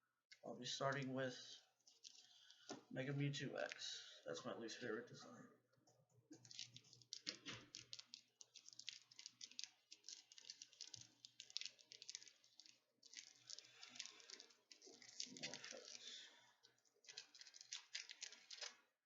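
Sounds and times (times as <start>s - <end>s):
foil wrapper crinkling and tearing: 6.4s - 16.4s, 17.0s - 18.9s.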